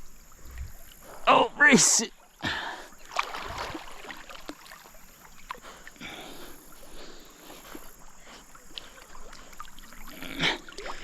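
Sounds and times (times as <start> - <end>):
river water splashing: 0.0 - 11.0.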